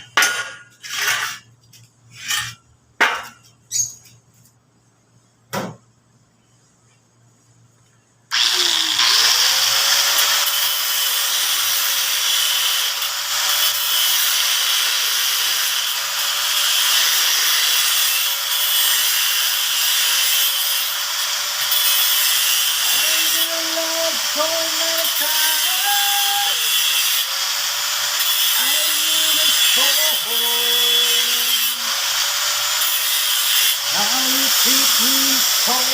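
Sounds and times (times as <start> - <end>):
handheld power tool whirring: 8.3 - 35.9.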